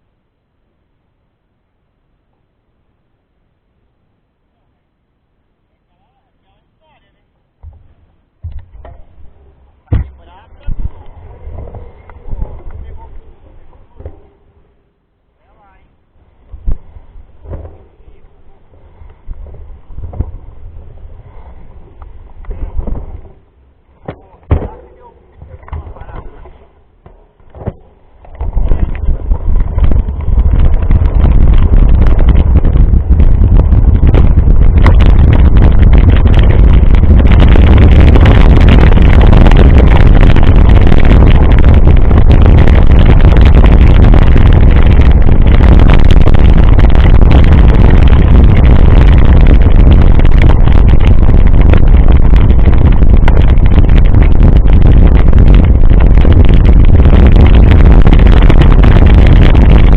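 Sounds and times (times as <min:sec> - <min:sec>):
bike rattling and knocking: 0:07.6 - 0:10.8, 0:27.0 - 0:45.6
wind buffeting microphone: 0:07.6 - 0:14.8, 0:16.2 - 0:59.9.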